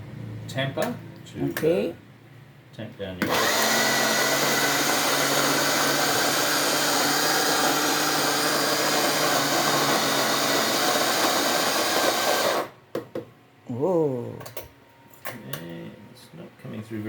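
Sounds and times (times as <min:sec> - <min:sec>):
coffee grinder grinding beans: 0:03.2 - 0:12.8.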